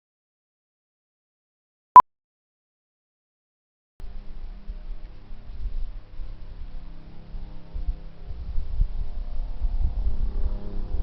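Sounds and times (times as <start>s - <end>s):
helicopter running: 6.6s - 11.0s.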